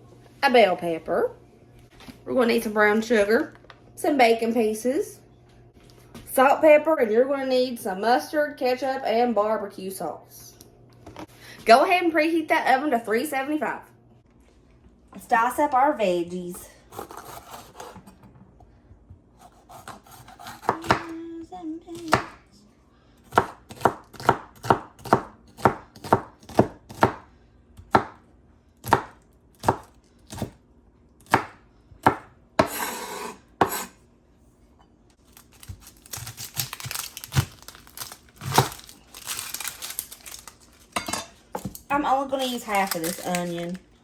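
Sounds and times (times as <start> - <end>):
knife chopping vegetables: 16.9 - 18.2, 19.4 - 21.2, 23.2 - 28.2, 28.8 - 30.6, 31.2 - 34.0.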